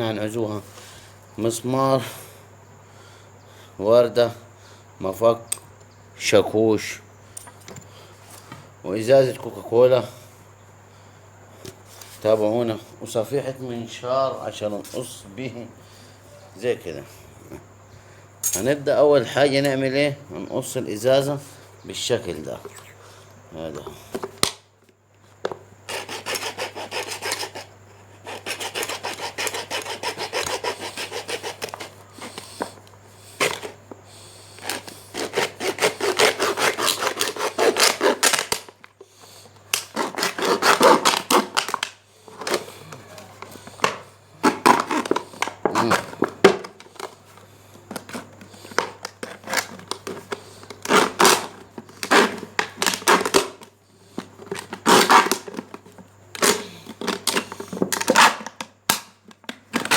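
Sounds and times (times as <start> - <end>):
saw cutting plastic bottle: 25.9 - 32.8, 33.4 - 33.8, 34.6 - 38.8, 39.7 - 42.6, 43.8 - 46.7, 48.2 - 53.6, 54.4 - 55.8.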